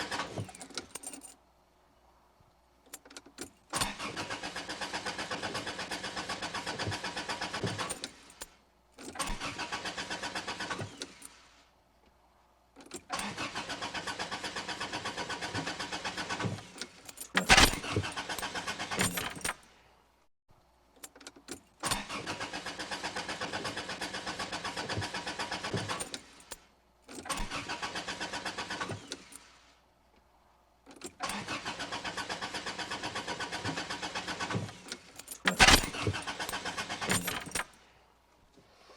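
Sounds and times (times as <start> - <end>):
car starter cranking engine: 0.0 - 1.0, 3.6 - 8.4, 9.0 - 11.3, 13.0 - 19.6, 21.8 - 26.4, 27.1 - 29.5, 31.0 - 37.8.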